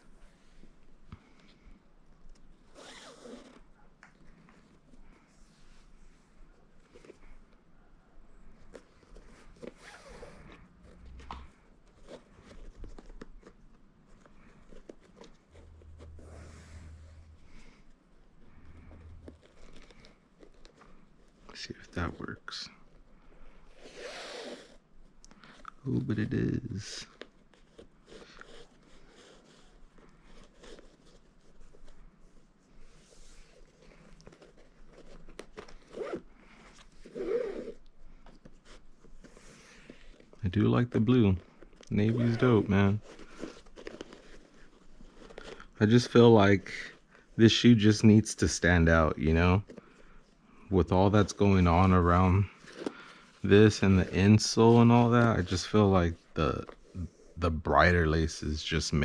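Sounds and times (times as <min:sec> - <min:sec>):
shoelaces rasping through eyelets: 0:33.4 - 0:40.5.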